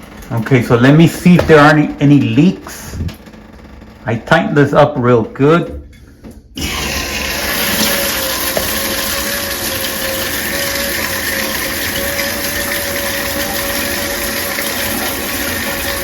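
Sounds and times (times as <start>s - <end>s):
shower water spraying: 6.6s - 16.0s.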